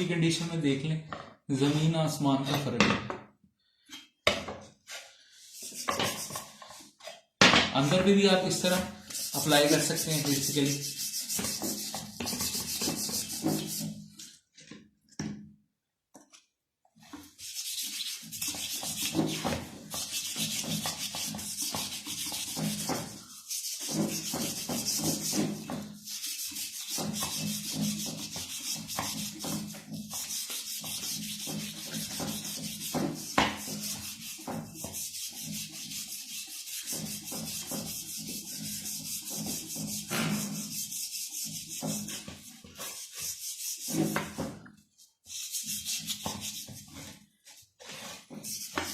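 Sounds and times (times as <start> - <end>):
hand scrubbing polish on metal: 5.5 - 6.8, 8.3 - 14.0, 17.0 - 44.5, 45.2 - 47.2, 48.0 - 48.9.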